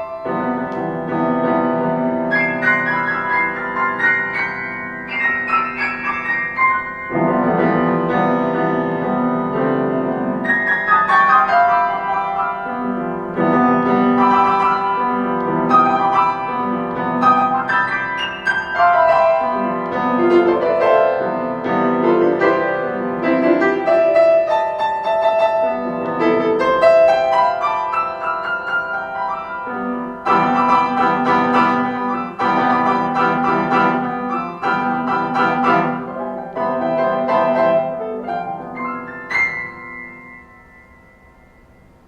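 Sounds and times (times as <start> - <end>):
piano playing: 0.0 - 42.0
high ringing tone: 39.3 - 42.0.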